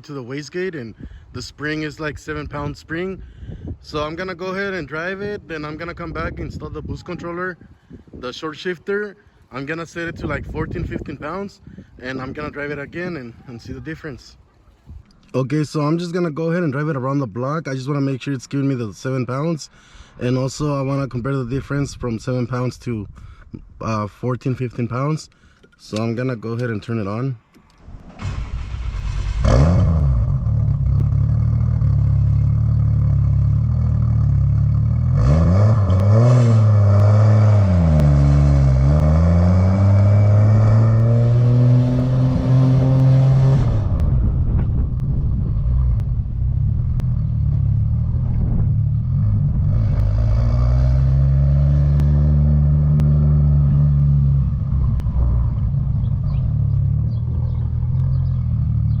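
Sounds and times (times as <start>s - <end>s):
car engine idling and revving: 27.8s - 59.0s.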